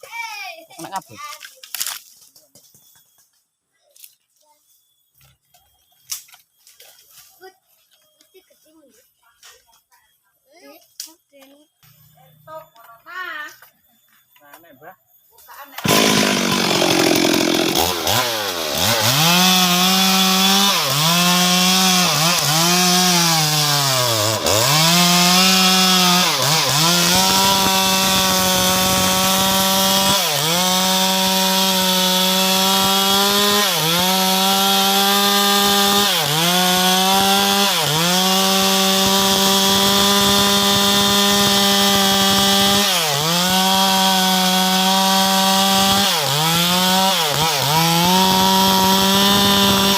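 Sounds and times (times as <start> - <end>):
chainsaw cutting into tree: 15.8 - 49.9.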